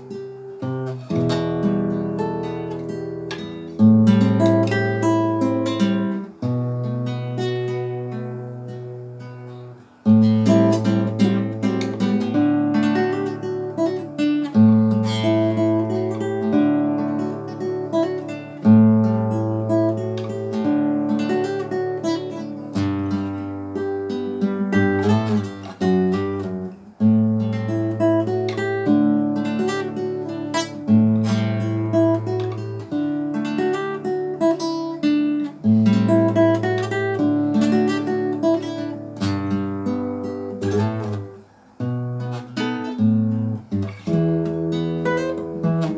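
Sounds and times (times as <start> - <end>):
acoustic guitar: 0.0 - 45.9.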